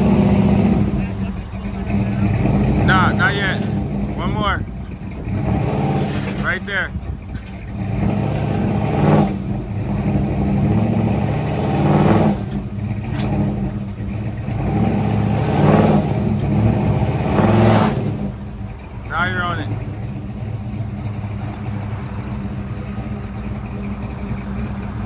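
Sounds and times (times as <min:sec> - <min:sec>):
car engine revving: 0:00.0 - 0:25.0.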